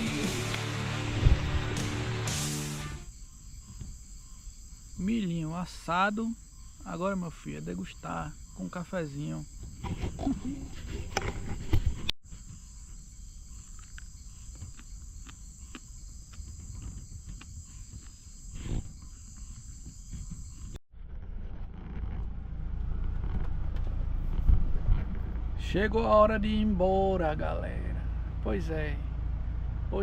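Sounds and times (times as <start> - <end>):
low rumble: 0.0 - 2.3, 20.9 - 26.8
insects chirring: 0.0 - 20.8.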